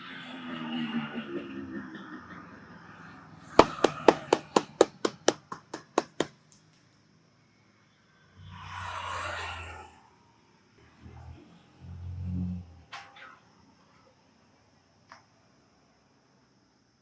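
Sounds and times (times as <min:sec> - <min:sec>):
hands slapping head in massage: 0:03.6 - 0:06.3.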